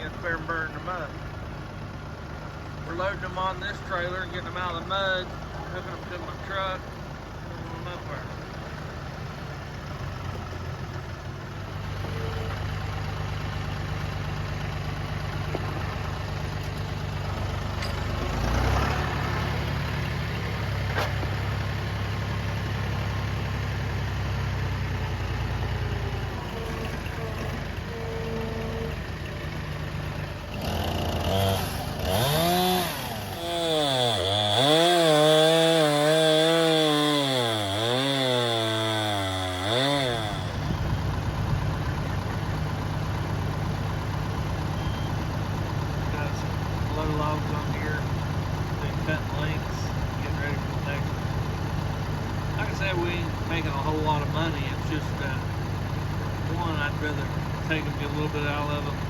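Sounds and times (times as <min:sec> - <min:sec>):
engine running: 0:00.0 - 0:59.0
chainsaw revving: 0:18.2 - 0:20.3, 0:30.5 - 0:40.9.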